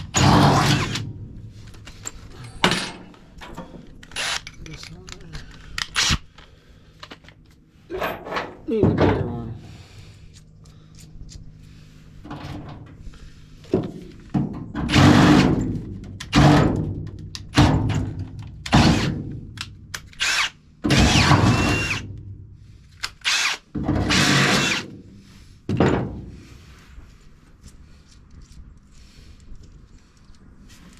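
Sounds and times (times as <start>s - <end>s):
power drill drilling sheet metal: 0.0s - 1.0s, 14.9s - 15.7s, 18.7s - 19.2s, 20.2s - 22.1s, 23.2s - 25.0s.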